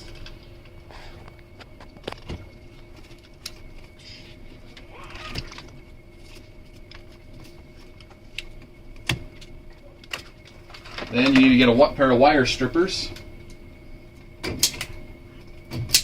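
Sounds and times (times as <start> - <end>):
faint steady hum: 0.0 - 16.0
wire insulation being stripped: 14.4 - 15.0.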